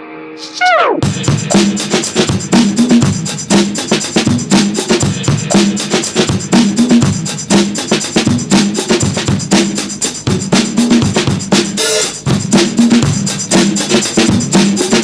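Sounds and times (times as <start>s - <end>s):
repeating bass line: 0.4s - 1.1s
drum beat: 0.4s - 15.0s.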